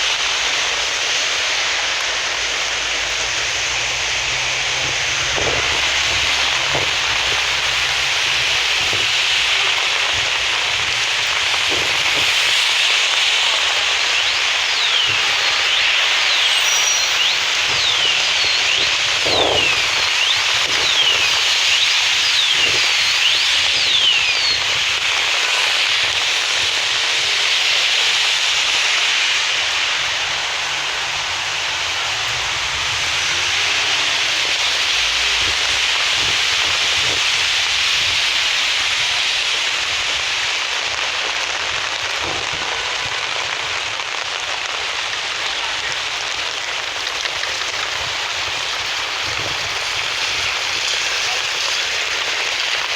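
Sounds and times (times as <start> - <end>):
steady rain hiss: 0.0 - 52.9
high sliding chirps: 13.8 - 22.5.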